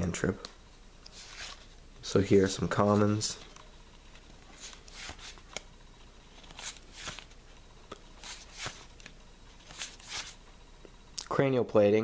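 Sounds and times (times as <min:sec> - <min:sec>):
trading cards swishing by hand: 0:01.1 - 0:01.7, 0:04.6 - 0:05.5, 0:06.4 - 0:07.3, 0:08.2 - 0:10.4.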